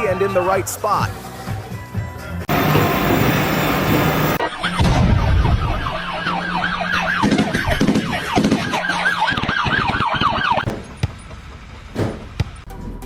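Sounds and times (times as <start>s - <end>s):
siren yelping: 2.5s - 10.7s.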